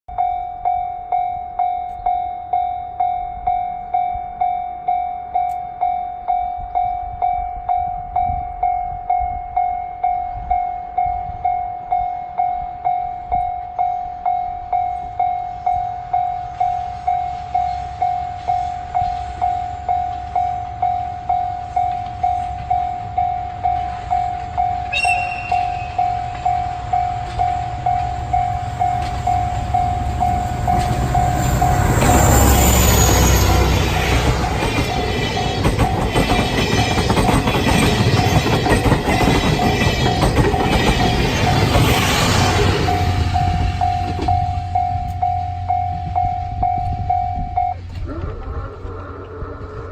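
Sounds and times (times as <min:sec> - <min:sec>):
level-crossing warning bell: 0:00.1 - 0:49.4
diesel locomotive engine rumble: 0:00.1 - 0:49.9
high locomotive whistle: 0:24.8 - 0:37.1.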